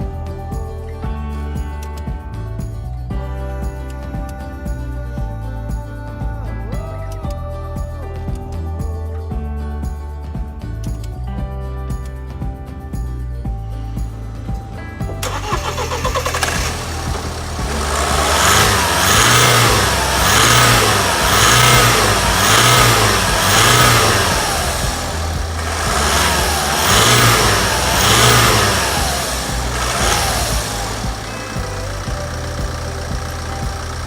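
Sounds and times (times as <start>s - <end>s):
diesel engine revving: 15.1s - 34.0s.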